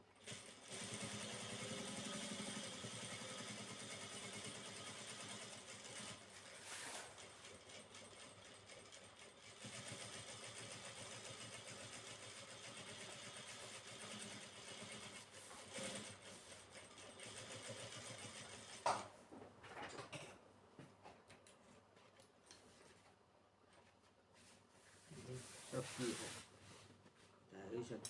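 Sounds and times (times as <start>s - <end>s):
sewing machine running: 0.2s - 6.5s, 7.2s - 18.8s.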